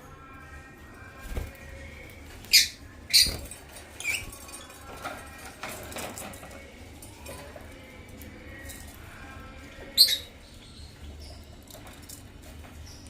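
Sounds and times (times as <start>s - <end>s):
lovebirds squawking: 2.5s - 4.4s.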